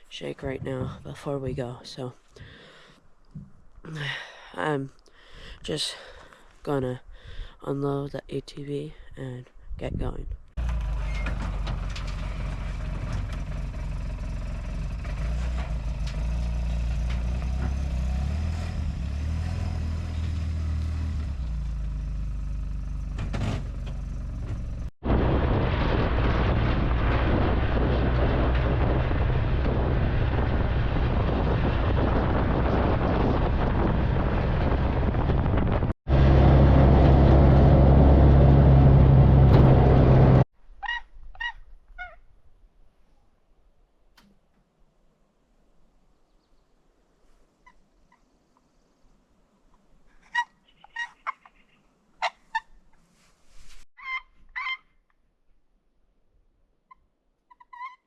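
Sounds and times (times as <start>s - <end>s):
atv engine running: 10.6s - 24.9s, 27.8s - 40.4s.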